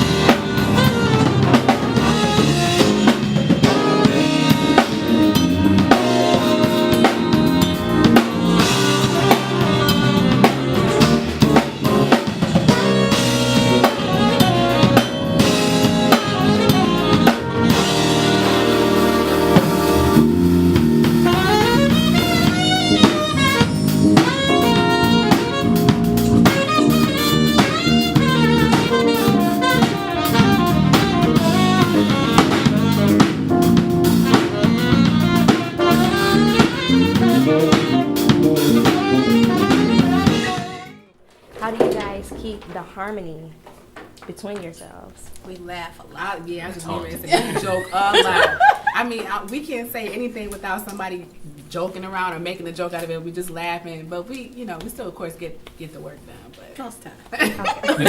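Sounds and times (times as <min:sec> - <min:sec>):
bass drum and snare rimshots: 0:00.0 - 0:41.0
lead instrument melodic runs: 0:00.0 - 0:41.1
jazz soul band playing: 0:00.0 - 0:45.0, 0:46.2 - 0:51.1.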